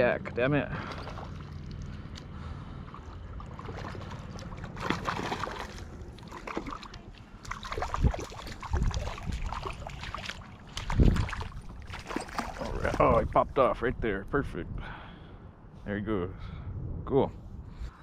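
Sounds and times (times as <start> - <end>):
steady low rumble: 0.0 - 18.0
small splashes and knocks: 0.8 - 2.3, 2.9 - 13.2
fish splashing in water: 2.9 - 13.0.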